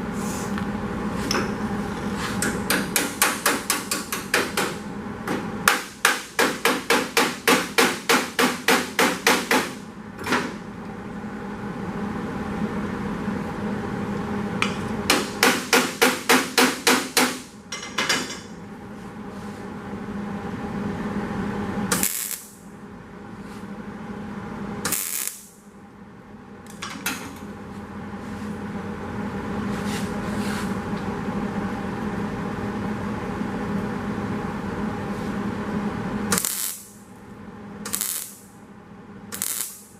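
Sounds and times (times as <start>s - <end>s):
hammer striking sheet steel: 2.4s - 4.8s, 5.7s - 9.8s, 15.1s - 18.5s.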